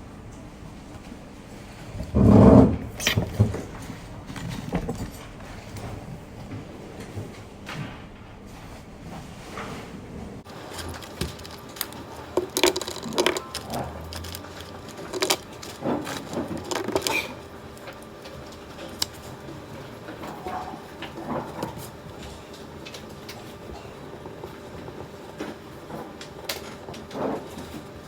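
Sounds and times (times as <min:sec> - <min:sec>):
small objects clicking and knocking: 0:10.5 - 0:19.3.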